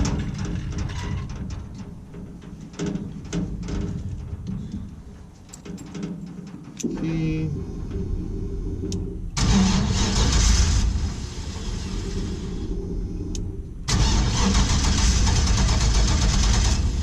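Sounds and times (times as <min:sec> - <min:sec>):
engine starter cranking: 0:09.4 - 0:12.8, 0:13.4 - 0:17.0.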